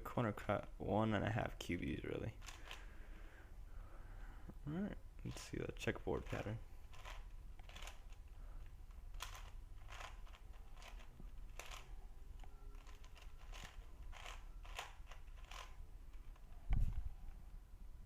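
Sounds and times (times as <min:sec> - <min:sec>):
puzzle cube layers clacking: 0:06.2 - 0:08.3, 0:08.9 - 0:16.5.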